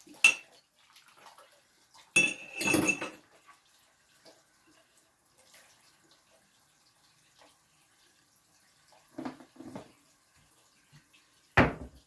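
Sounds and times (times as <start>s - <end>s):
dishes and cutlery clinking: 0.2s - 0.6s, 2.2s - 3.3s.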